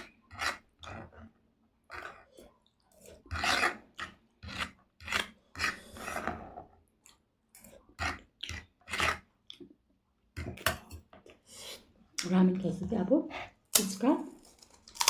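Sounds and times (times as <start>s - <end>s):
chewing and slurping mouth sounds: 7.0s - 9.8s.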